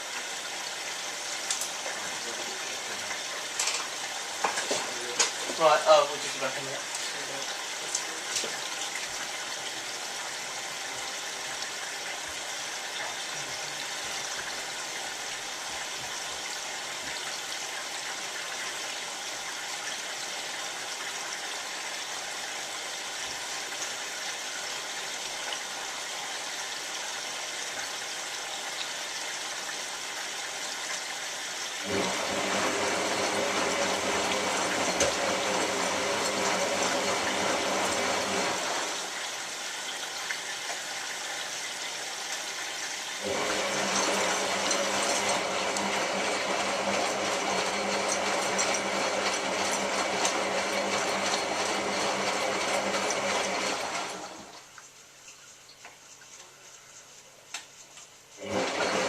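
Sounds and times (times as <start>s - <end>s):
pump humming: 0.0s - 40.2s, 42.9s - 54.7s, 58.4s - 59.0s
water hissing into washing machine: 0.0s - 59.0s.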